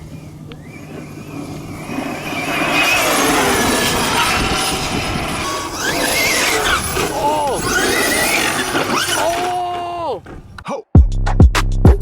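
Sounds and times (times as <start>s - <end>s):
electric motor whine: 0.0s - 9.5s
tyre and ground noise: 0.0s - 10.7s.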